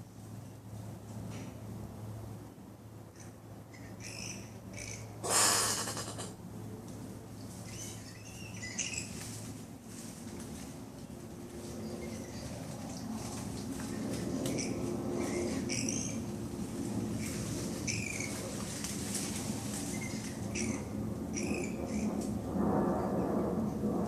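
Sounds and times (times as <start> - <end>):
possum chirps: 3.7 - 6.4
possum hissing: 5.2 - 6.4.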